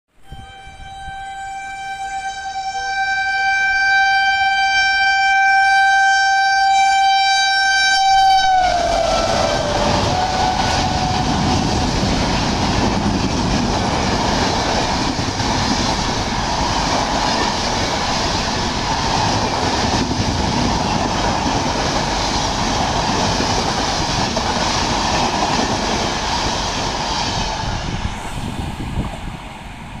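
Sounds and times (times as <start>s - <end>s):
locomotive horn: 0.2s - 11.8s
train coaches rushing past: 8.2s - 30.0s.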